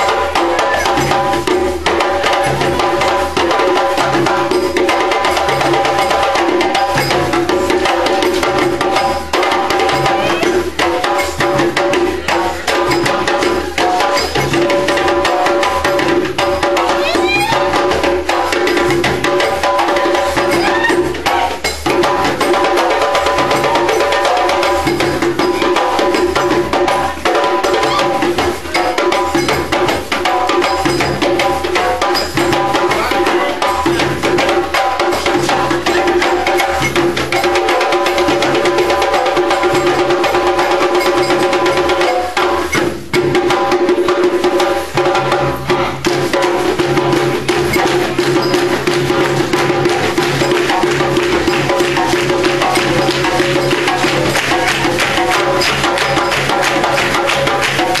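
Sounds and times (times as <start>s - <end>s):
drums in fast rhythm: 0.0s - 58.0s
held pitched tones: 20.3s - 22.0s.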